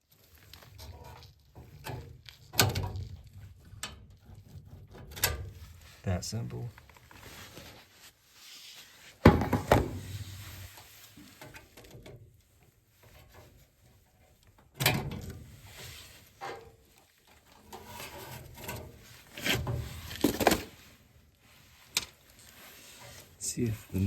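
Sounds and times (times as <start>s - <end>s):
rustling: 5.4s - 14.6s, 15.4s - 24.0s
knocks and clunks of parts handled: 9.2s - 10.2s, 17.6s - 20.8s.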